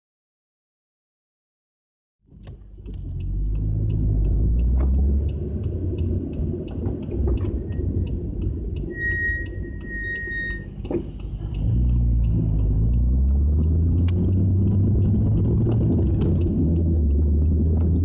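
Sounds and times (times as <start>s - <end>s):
car drivetrain and road rumble: 2.2s - 18.0s
thin high tone: 8.8s - 10.8s.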